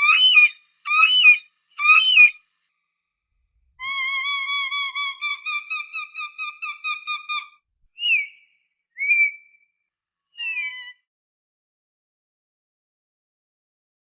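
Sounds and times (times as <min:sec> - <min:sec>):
falcon calling: 0:00.0 - 0:02.4, 0:03.8 - 0:09.6, 0:10.4 - 0:11.0.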